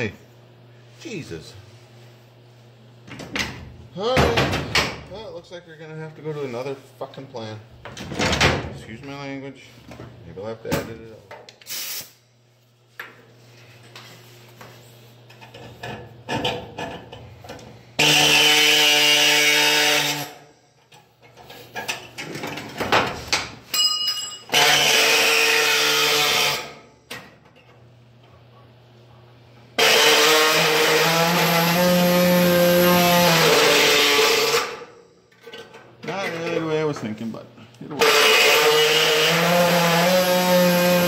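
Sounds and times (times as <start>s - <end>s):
handheld power tool running: 24.5s - 26.8s, 29.8s - 34.9s, 38.0s - 41.0s.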